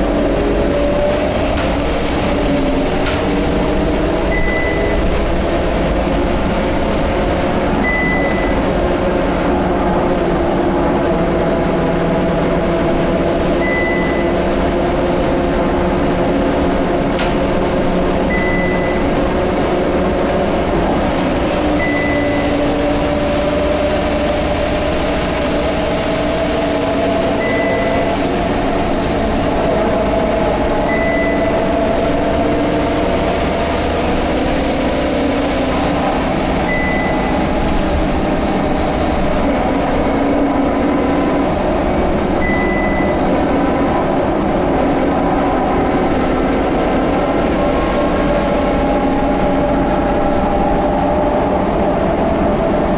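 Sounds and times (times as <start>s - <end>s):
bus diesel engine running: 0.0s - 52.9s
lower axle whine: 0.0s - 52.9s
short high beeps: 4.3s - 5.0s, 13.6s - 14.3s, 18.3s - 19.2s, 36.7s - 37.4s, 42.4s - 43.2s.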